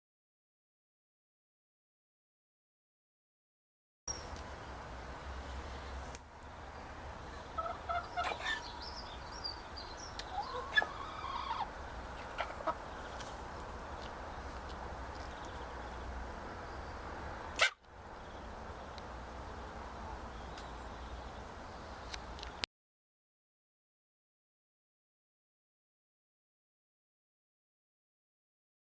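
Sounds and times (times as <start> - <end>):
chickens calling: 7.2 - 16.1, 17.5 - 18.5
chicken sneezes: 17.6 - 17.8.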